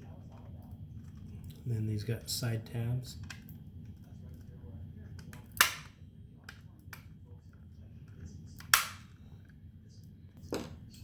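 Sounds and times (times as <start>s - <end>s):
plastic pieces snapping together: 5.2s - 6.0s.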